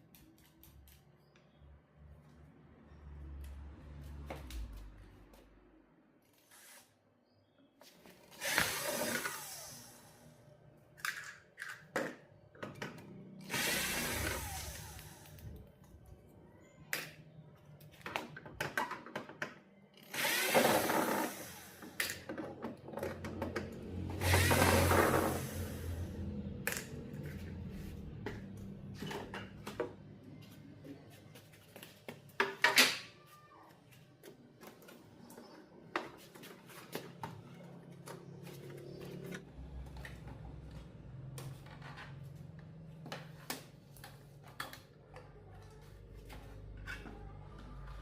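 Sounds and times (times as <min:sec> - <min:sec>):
clicks and knocks of small parts: 0:00.0 - 0:01.5.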